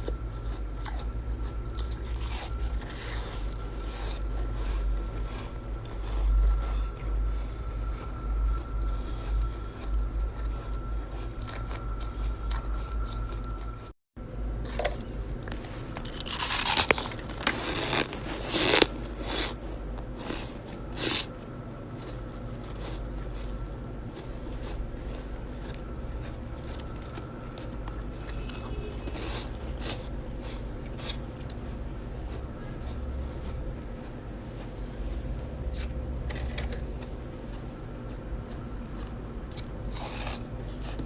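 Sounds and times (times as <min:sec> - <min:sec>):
frost being scraped and crunched: 0:01.8 - 0:11.9, 0:15.0 - 0:19.6, 0:39.5 - 0:41.0.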